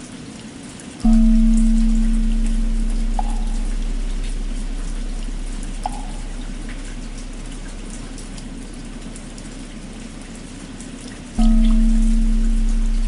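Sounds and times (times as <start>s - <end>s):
steady rain: 0.0s - 13.0s.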